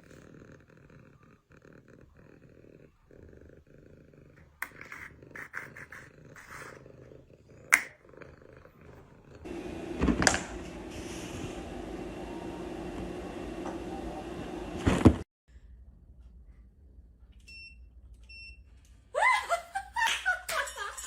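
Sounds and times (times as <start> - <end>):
cat purring: 0.0 - 9.5.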